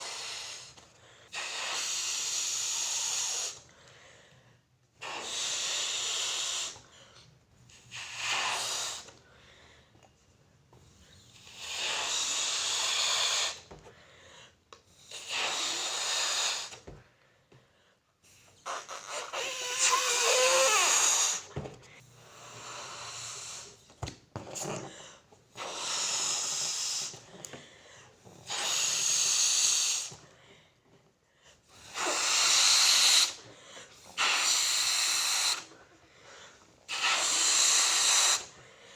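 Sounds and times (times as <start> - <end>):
breathy puffs into balloon: 11.2 - 13.7, 14.9 - 16.9, 18.2 - 21.5, 24.6 - 27.4, 28.2 - 30.2, 31.6 - 38.7
balloon squeak: 18.4 - 21.5, 31.8 - 33.4, 34.1 - 35.7, 36.9 - 38.4.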